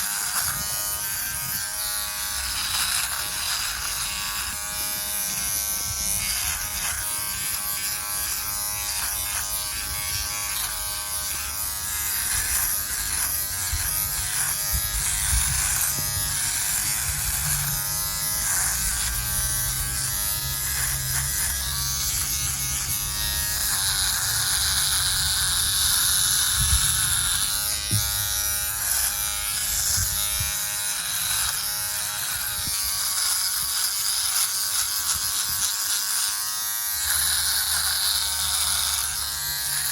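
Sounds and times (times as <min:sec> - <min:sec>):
electric shaver buzzing: 0:00.0 - 0:39.9.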